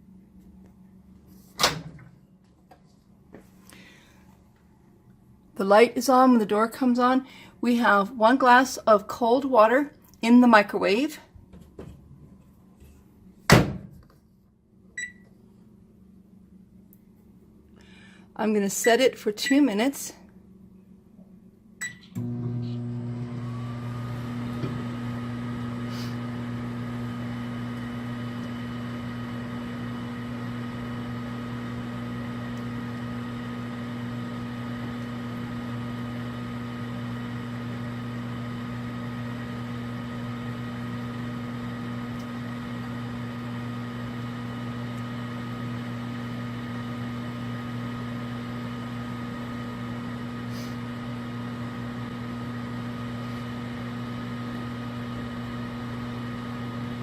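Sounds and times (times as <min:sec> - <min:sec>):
microwave oven humming: 0:14.9 - 0:19.7, 0:21.7 - 0:57.0.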